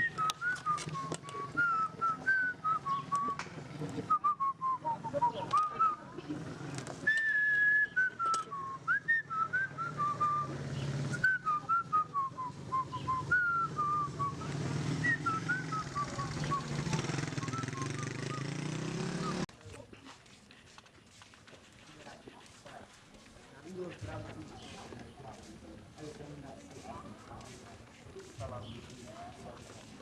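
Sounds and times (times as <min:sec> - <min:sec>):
person whistling a tune: 0:00.0 - 0:03.4, 0:04.1 - 0:06.0, 0:07.0 - 0:10.5, 0:11.1 - 0:18.5.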